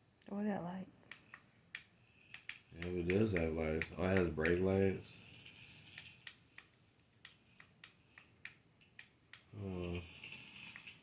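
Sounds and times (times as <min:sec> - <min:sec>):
sharp plastic clicks: 0:01.0 - 0:04.8, 0:05.9 - 0:09.5.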